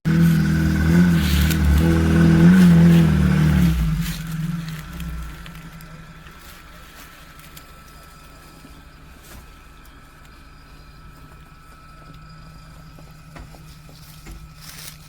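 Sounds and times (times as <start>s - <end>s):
vehicle engine idling: 0.0s - 15.0s
thin high whine: 0.1s - 15.0s.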